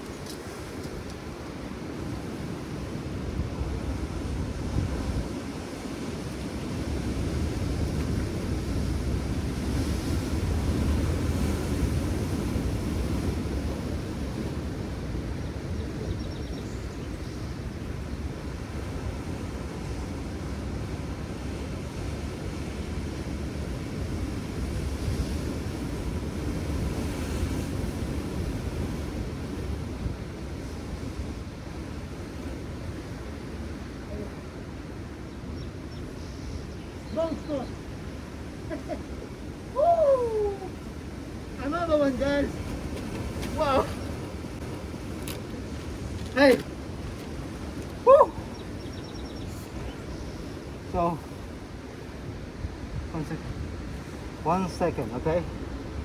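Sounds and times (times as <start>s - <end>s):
surf: 0.0s - 56.0s
wind: 0.0s - 56.0s.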